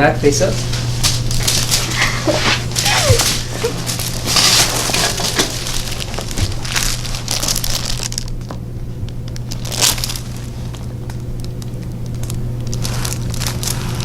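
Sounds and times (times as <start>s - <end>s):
rustling and crinkling on table: 0.5s - 8.6s, 12.1s - 14.0s.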